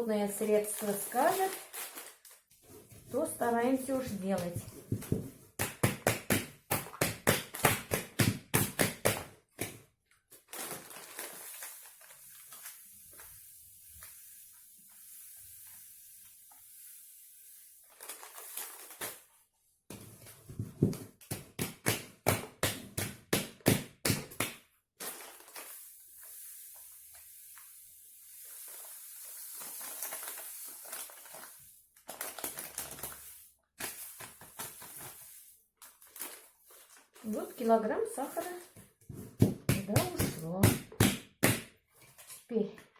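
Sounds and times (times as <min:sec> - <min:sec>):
sugar pouring into glass jar: 0:25.0 - 0:31.8.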